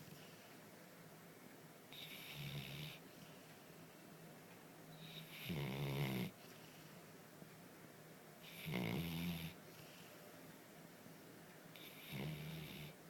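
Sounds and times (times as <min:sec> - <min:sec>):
quiet breathing: 0:00.0 - 0:00.9, 0:01.9 - 0:07.3, 0:08.4 - 0:10.7, 0:11.7 - 0:13.0
loud rattling snores: 0:05.1 - 0:06.4, 0:08.5 - 0:09.6, 0:11.8 - 0:13.0.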